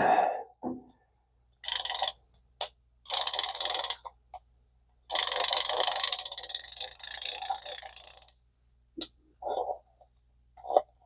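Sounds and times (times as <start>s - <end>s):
fishing reel ticking: 1.6s - 2.4s, 3.1s - 4.1s, 5.1s - 8.4s.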